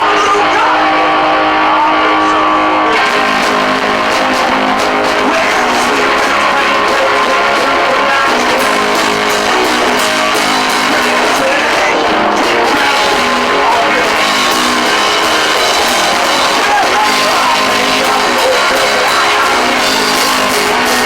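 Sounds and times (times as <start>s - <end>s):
blues rock guitar: 0.0s - 21.0s.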